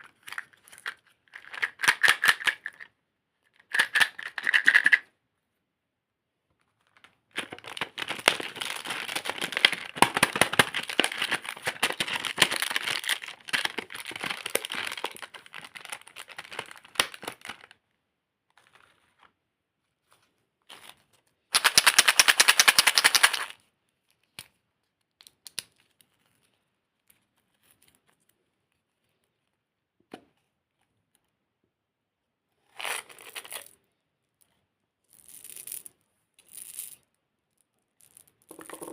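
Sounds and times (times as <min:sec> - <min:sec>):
plastic packaging crinkling: 0:07.3 - 0:17.7
small clicks and rustles: 0:23.8 - 0:29.6.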